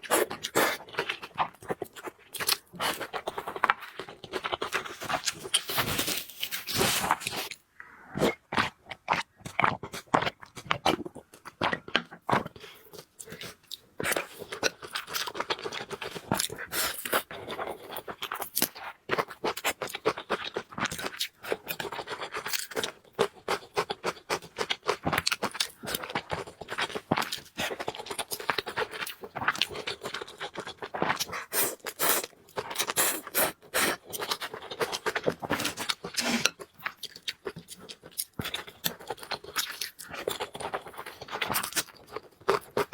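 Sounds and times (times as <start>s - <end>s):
chewing and crunching: 0.0s - 7.6s, 8.2s - 42.9s
scraping sounds: 5.7s - 7.5s, 36.2s - 36.5s.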